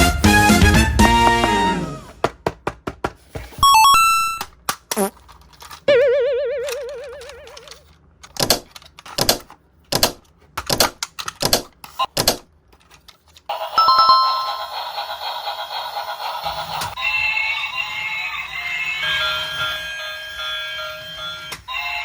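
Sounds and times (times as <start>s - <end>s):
electronic ringtone jingle: 3.6s - 4.4s, 5.9s - 7.7s, 13.8s - 15.0s.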